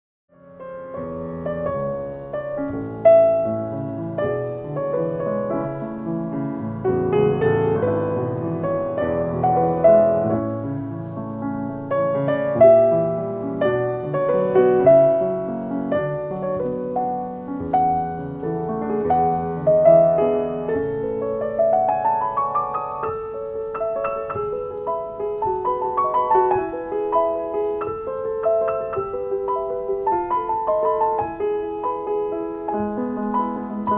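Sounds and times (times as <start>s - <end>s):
solo piano: 0.3s - 33.9s.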